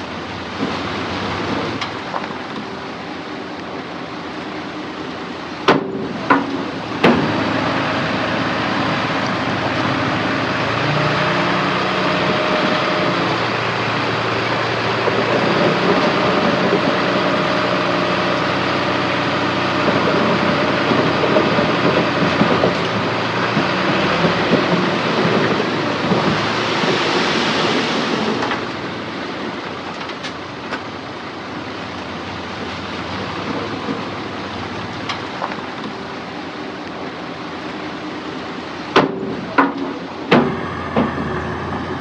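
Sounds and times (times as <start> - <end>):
diesel machinery engine running: 0.0 - 42.0
sharp knocks: 38.9 - 41.4.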